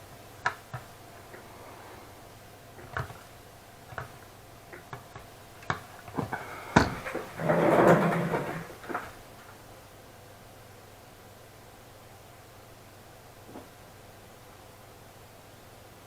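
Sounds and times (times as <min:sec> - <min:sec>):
scraping rustle: 0:06.2 - 0:09.2.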